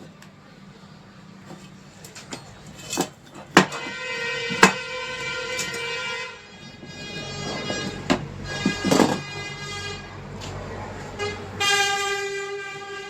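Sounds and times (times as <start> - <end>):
buzzy electronic horn tone: 3.8 - 10.4, 11.1 - 13.0.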